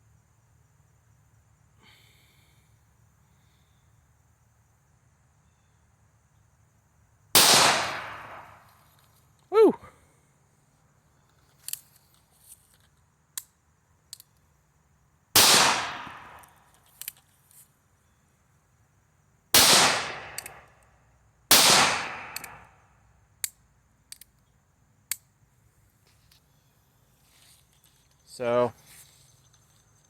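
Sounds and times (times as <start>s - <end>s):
revolver gunshots with echo: 7.4s - 8.6s, 15.4s - 16.4s, 19.6s - 20.6s, 21.5s - 22.6s
sharp clicks: 20.3s - 20.8s, 22.2s - 22.6s, 23.4s - 24.5s.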